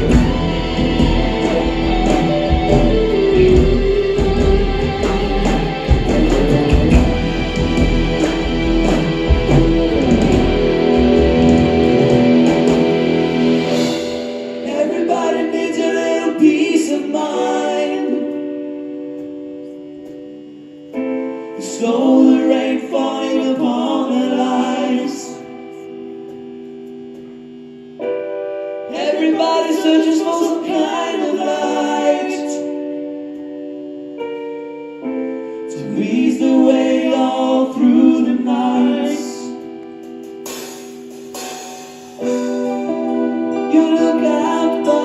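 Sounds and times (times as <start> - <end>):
rock band playing: 0.0 - 15.6, 39.7 - 45.0
sustained guitar and keyboard notes: 0.0 - 45.0.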